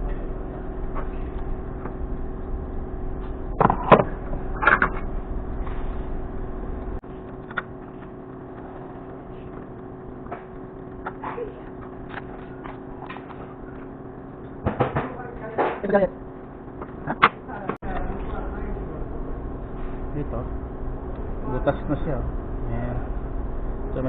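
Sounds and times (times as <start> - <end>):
low rumble: 0.0 - 14.6
steady mechanical hum: 0.0 - 24.0.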